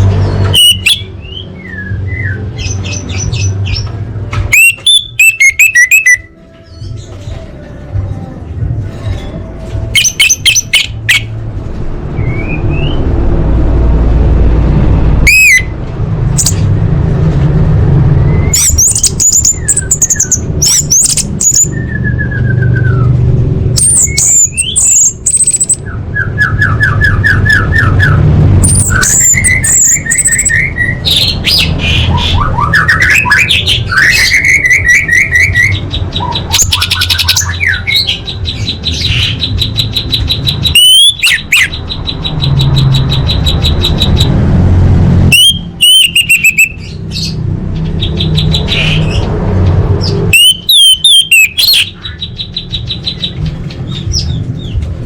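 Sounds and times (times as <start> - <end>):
thrush singing varied song: 0.0 - 16.7, 17.9 - 54.7
steady low rumble: 11.3 - 26.3.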